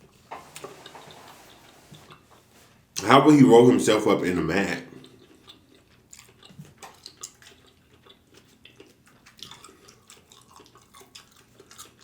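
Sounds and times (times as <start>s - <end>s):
wet chewing with lip smacks: 4.9s - 12.0s.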